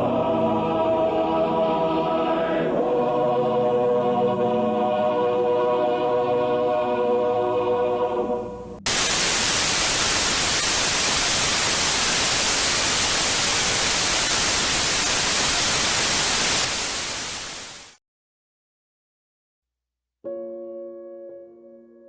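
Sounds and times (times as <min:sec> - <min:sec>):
music: 0:00.0 - 0:08.9, 0:20.2 - 0:22.0
tv static hiss: 0:08.9 - 0:18.0.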